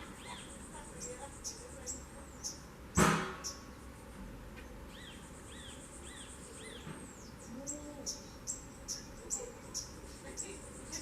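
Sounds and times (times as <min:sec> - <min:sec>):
small bird chirping: 0:00.0 - 0:03.9, 0:04.6 - 0:11.0
sharp knock: 0:03.0 - 0:03.4.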